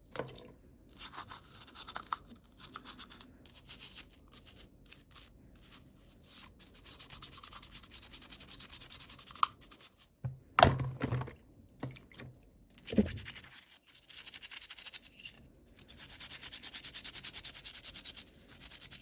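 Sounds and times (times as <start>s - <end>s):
handling knocks: 10.2s - 11.4s
hands rubbing toy packaging: 12.8s - 19.0s.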